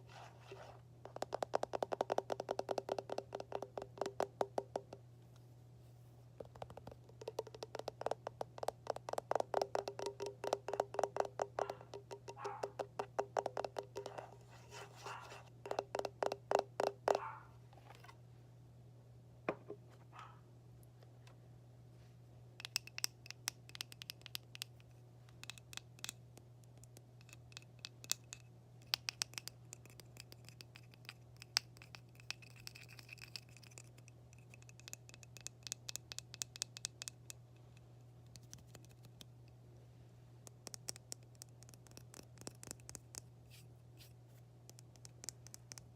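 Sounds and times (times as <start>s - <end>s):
tapping on hard objects: 1.1s - 5.0s, 6.4s - 14.3s, 15.7s - 17.3s.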